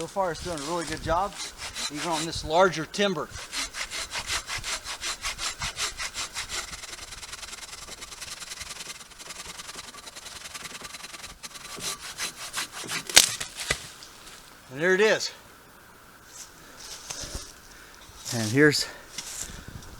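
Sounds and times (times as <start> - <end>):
handsaw rasping through log: 0.0 - 2.6, 3.3 - 13.9.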